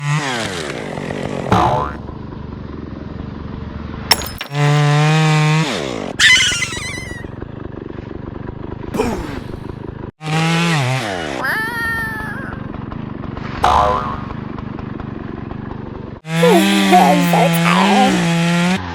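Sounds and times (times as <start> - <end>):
wobbling tone: 13.6 - 14.4.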